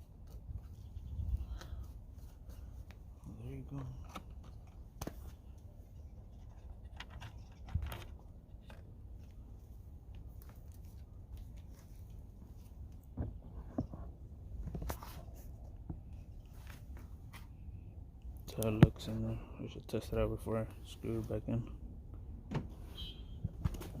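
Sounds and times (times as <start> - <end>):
low steady rumble: 0.0 - 24.0
plastic parts clicking and knocking: 6.4 - 8.9.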